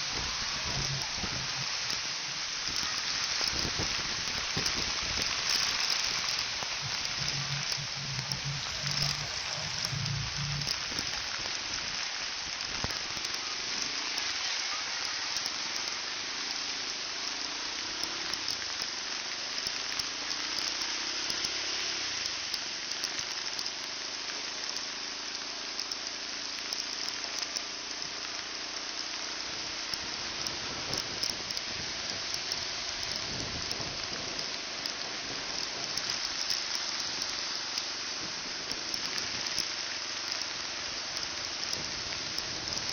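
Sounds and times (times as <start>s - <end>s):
wind on microphone: 0.0s - 11.3s
heavy rain: 0.0s - 11.4s.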